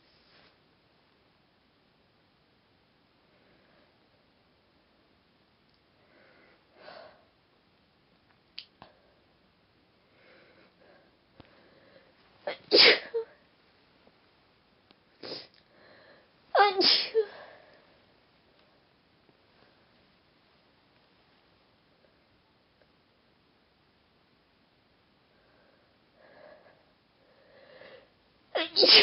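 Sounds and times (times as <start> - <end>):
woman sneezing: 12.5 - 13.3, 16.6 - 17.4, 28.6 - 29.0.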